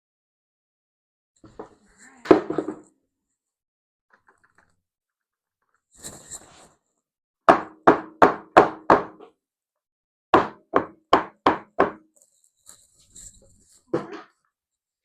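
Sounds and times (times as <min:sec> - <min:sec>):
sharp knocks on hard surface: 0:07.5 - 0:09.3, 0:10.3 - 0:12.0.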